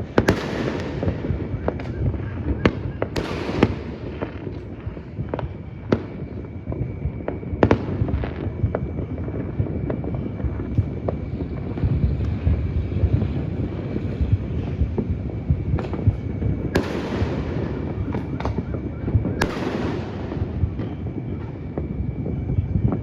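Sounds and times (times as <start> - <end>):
loud sharp firework bangs: 0.0 - 6.4, 7.4 - 23.0
distant fireworks bangs: 0.0 - 23.0
firework hiss: 7.5 - 23.0.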